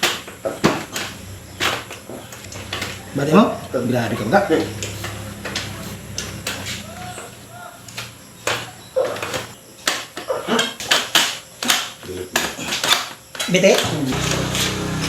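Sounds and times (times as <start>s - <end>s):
sharp cracks and knocks of body: 0.0s - 3.5s, 7.9s - 14.0s.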